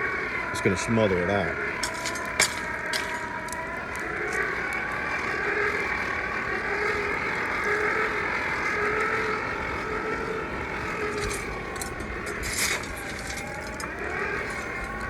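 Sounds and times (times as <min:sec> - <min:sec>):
faint wavering hum: 0:01.5 - 0:15.0.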